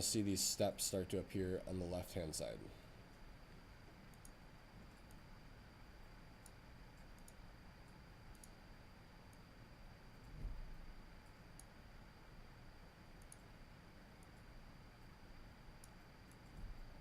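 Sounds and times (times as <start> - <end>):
faint high whine: 0.0 - 17.0
computer mouse clicks: 4.1 - 5.3, 6.4 - 8.6, 11.2 - 11.8, 13.2 - 13.5, 15.8 - 16.6.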